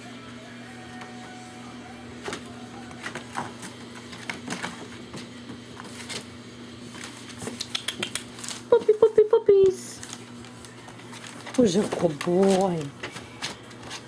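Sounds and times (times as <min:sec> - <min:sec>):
low electrical hum: 0:00.0 - 0:14.0
puppy claws clicking on paper: 0:06.9 - 0:08.9, 0:09.6 - 0:14.0.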